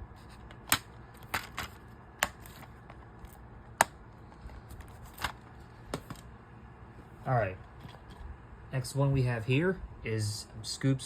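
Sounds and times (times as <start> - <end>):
plastic disc cases snapping: 0.5 - 4.0, 4.7 - 6.3.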